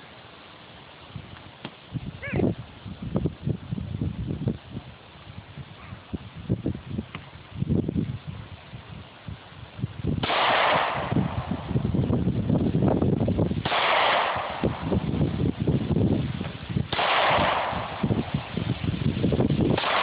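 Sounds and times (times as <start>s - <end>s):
low rumbling noise: 0.0s - 20.0s
pistol shots: 10.2s - 11.6s, 13.6s - 14.9s, 16.9s - 18.2s, 19.7s - 20.0s.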